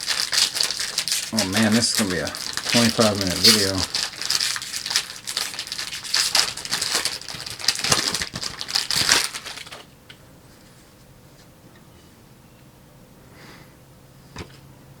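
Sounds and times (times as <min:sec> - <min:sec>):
foil wrapper tearing and crinkling: 0:00.0 - 0:09.9.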